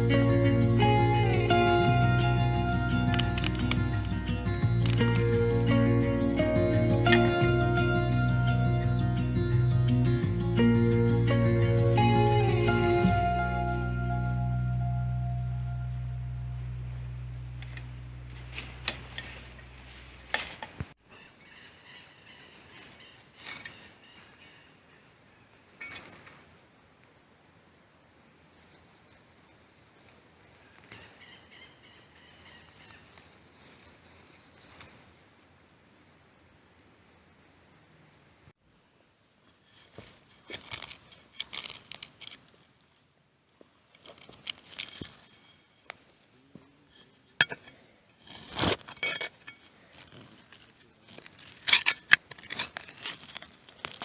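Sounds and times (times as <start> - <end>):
sharp clinks: 0.0 - 19.9
soft rustling: 12.8 - 21.0, 28.6 - 35.6, 39.4 - 54.0.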